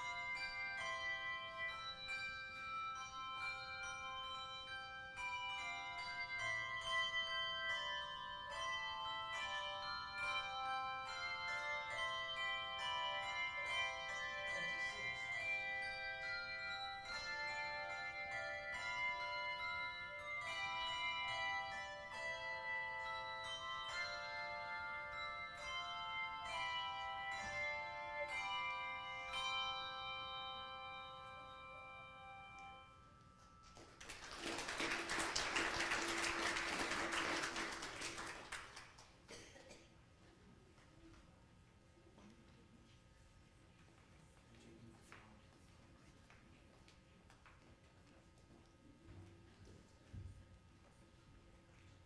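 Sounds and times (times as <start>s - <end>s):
handbell choir playing: 0.0s - 38.8s.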